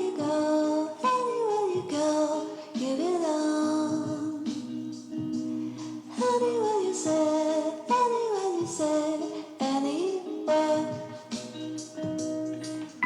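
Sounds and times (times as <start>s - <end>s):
intro music with singing voice: 3.9s - 13.0s.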